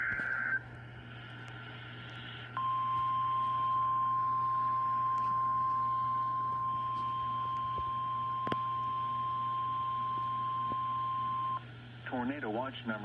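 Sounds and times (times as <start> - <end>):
faint radio hiss: 0.0 - 13.0
steady warning beep: 2.6 - 11.6.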